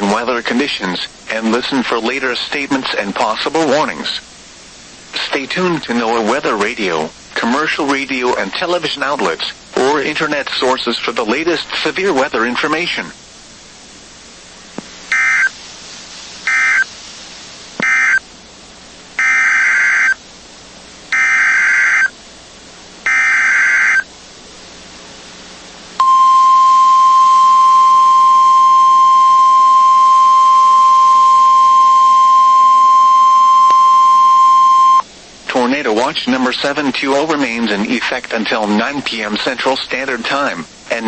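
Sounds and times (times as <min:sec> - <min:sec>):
digital data bursts: 0:16.5 - 0:16.9
steady high alert tone: 0:23.1 - 0:24.0, 0:26.0 - 0:35.0.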